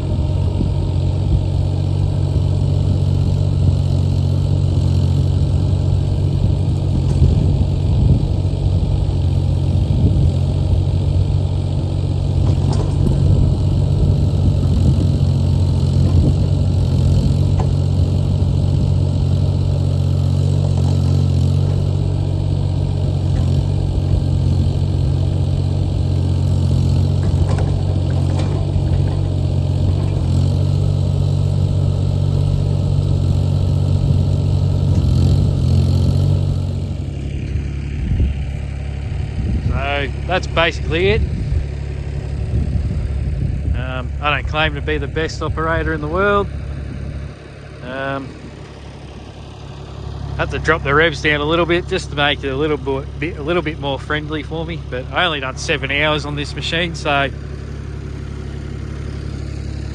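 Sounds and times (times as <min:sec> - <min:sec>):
mini excavator diesel engine running: 0:00.0 - 0:59.9.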